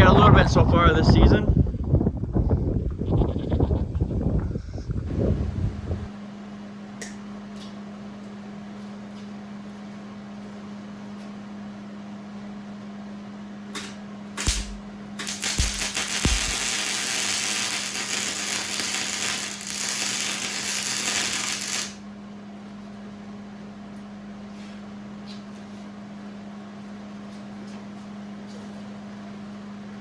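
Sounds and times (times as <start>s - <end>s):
welding arc pops: 13.8s - 22.0s
crackling weld: 14.4s - 22.0s
low hum: 14.4s - 22.0s.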